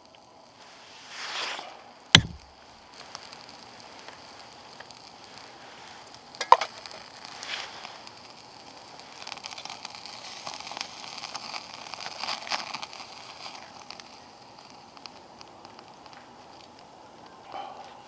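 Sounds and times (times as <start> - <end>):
crackles and pops: 0.0 - 18.0
food sizzling in a pan: 3.2 - 17.4.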